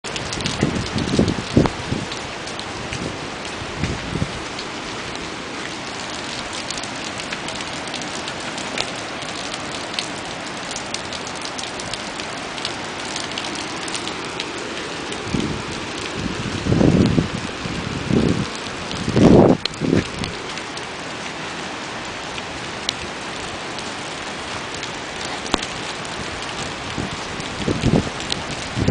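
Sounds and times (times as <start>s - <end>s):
steady rain falling: 0.0s - 28.9s.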